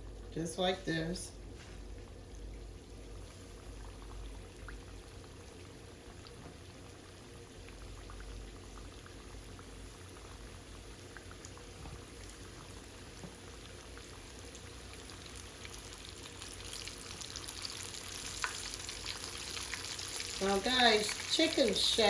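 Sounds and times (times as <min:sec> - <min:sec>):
chicken sizzling in grease: 0:07.2 - 0:22.0.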